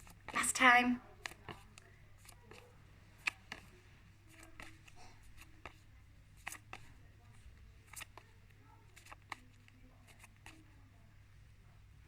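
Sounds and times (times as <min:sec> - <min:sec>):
cards being handled: 0:01.2 - 0:03.6.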